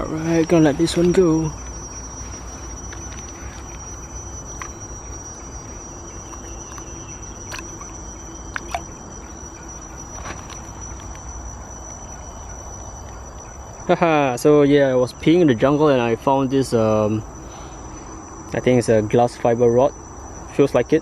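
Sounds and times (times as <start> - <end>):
insects droning: 0.0 - 21.0.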